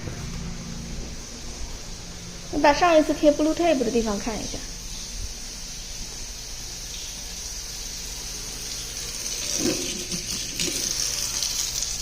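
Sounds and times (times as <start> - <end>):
water running from faucet: 2.6 - 12.0.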